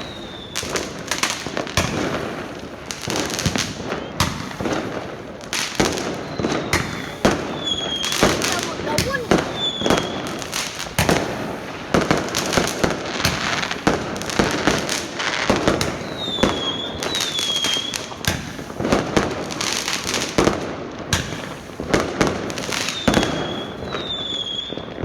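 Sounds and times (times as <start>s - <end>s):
falling whistles: 0.0s - 0.7s, 3.5s - 4.6s, 5.8s - 10.4s, 15.9s - 18.0s, 22.8s - 24.9s
fireworks bangs: 0.0s - 25.0s
fireworks crackle: 0.0s - 25.0s.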